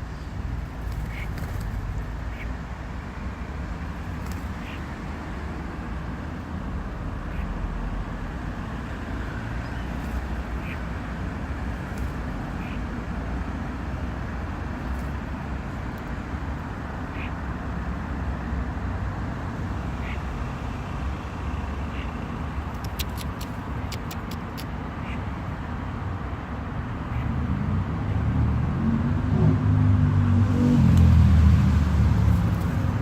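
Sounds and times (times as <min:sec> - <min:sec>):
faint bird calls: 0:00.7 - 0:02.6, 0:04.0 - 0:05.2, 0:07.2 - 0:07.8, 0:08.7 - 0:12.9, 0:17.0 - 0:17.4, 0:19.9 - 0:20.3, 0:21.8 - 0:25.5.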